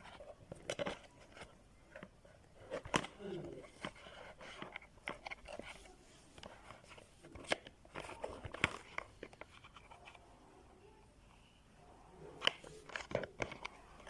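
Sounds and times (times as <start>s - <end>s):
small hard parts clicking and scraping: 0.0s - 10.2s.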